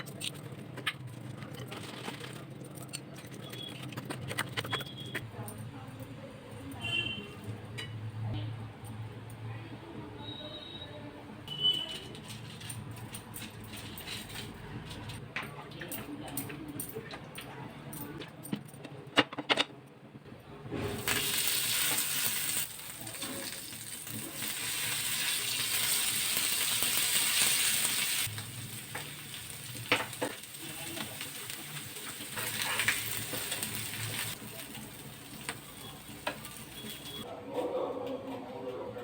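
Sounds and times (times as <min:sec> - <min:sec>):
bread frying on a hot pan: 0:20.8 - 0:37.3.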